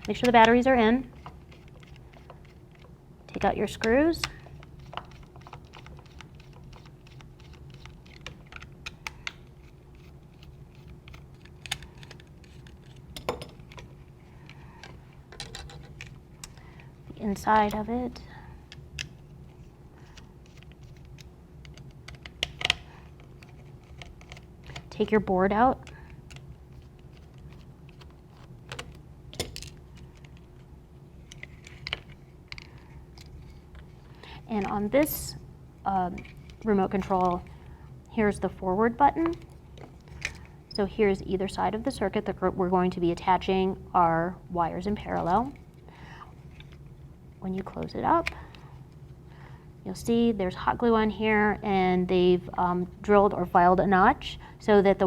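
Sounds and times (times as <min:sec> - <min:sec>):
low steady hum: 0:00.0 - 0:55.0
plastic parts clicking and rattling: 0:10.3 - 0:16.8.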